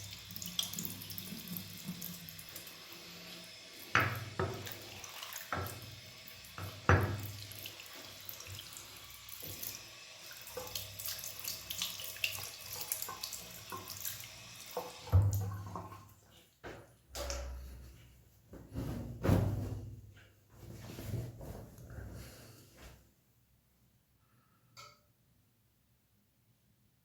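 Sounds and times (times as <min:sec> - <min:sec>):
water running and splashing: 0:00.0 - 0:16.6.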